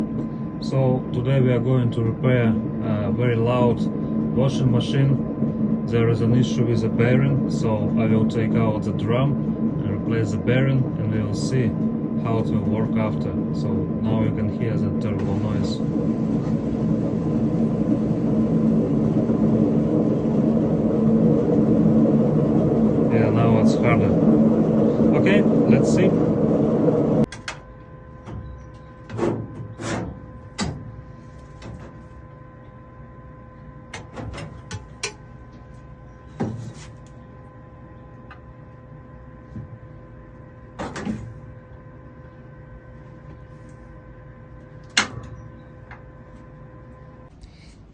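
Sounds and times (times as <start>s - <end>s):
washing machine drum grinding rumble: 0.0s - 27.3s
steady low hum: 0.0s - 47.9s.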